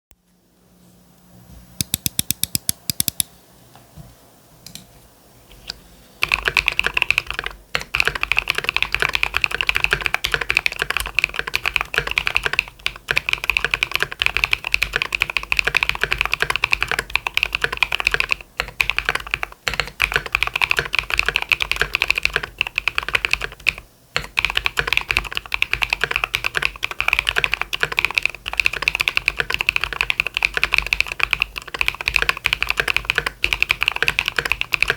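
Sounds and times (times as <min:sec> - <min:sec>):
mechanical keyboard typing: 0:01.8 - 0:03.3, 0:06.2 - 0:34.9.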